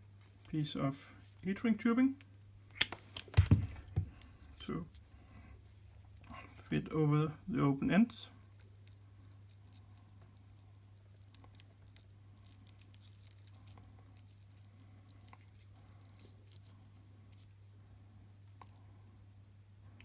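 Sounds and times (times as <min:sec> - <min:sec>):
low electrical hum: 0:00.0 - 0:20.0
small clicks and rustles: 0:08.3 - 0:17.8.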